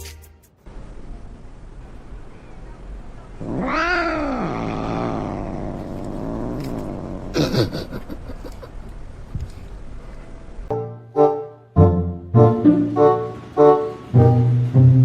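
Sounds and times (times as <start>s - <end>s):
cat meowing: 3.4s - 7.3s.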